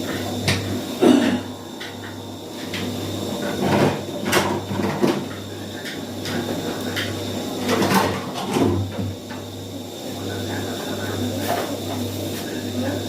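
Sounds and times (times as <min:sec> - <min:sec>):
steady low hum: 0:00.0 - 0:13.0
cookware and utensils clattering: 0:01.3 - 0:09.1.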